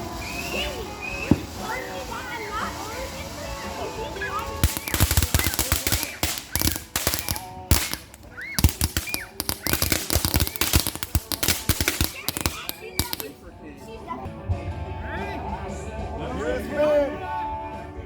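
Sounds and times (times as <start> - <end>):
firecrackers popping: 0.0 - 13.5.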